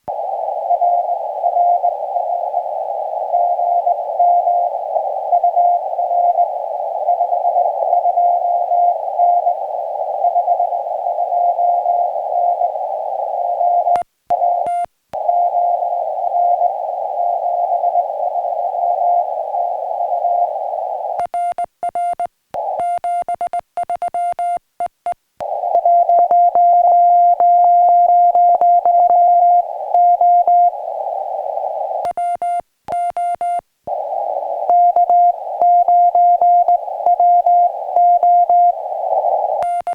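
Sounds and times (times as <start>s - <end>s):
radio receiver hiss: 0.0s - 39.9s
keyed sidetone: 21.2s - 25.2s, 32.0s - 33.6s, 39.6s - 39.9s
morse code tone: 21.2s - 25.2s, 32.0s - 33.6s, 34.7s - 38.8s, 39.6s - 39.9s.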